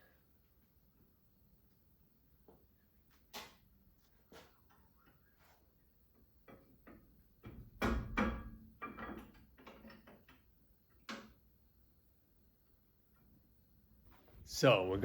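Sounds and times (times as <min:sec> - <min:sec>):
tools knocking and clacking: 0:06.4 - 0:10.4.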